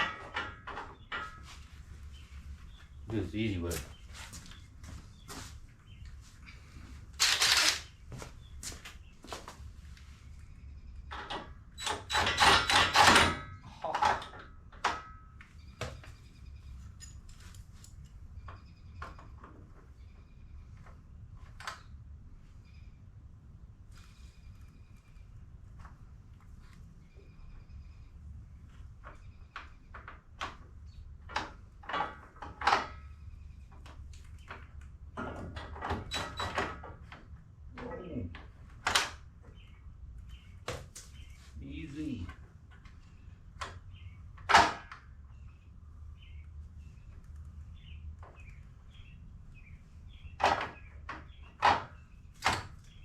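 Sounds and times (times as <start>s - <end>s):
metal parts and tools clanking: 0.0s - 1.6s, 11.1s - 15.4s
metallic clatter of car parts: 0.0s - 2.2s, 11.1s - 16.1s, 29.9s - 39.3s, 43.6s - 45.2s
bird chirping: 18.2s - 20.8s, 39.4s - 42.3s, 43.0s - 44.4s, 45.2s - 53.0s.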